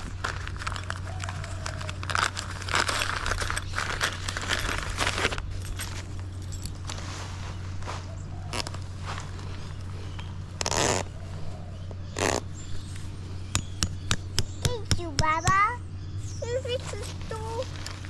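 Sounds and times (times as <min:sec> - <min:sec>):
tent fabric rustling: 0:00.0 - 0:11.5, 0:16.2 - 0:18.0.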